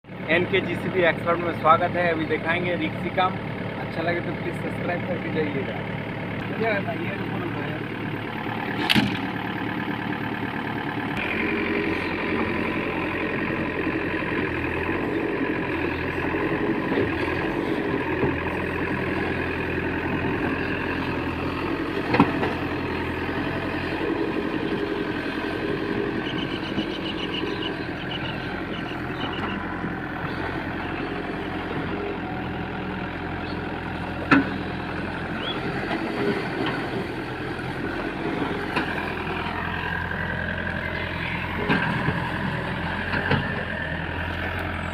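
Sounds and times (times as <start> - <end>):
diesel engine running: 0.0 - 44.9
sharp knocks: 8.8 - 9.4.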